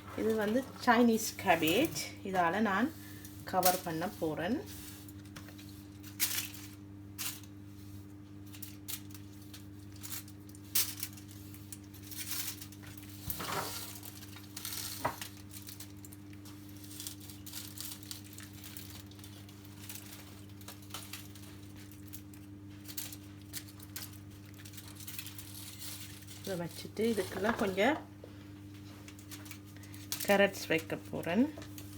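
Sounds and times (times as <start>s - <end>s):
steady low hum: 0.0s - 31.9s
leafy rustles: 8.5s - 28.0s.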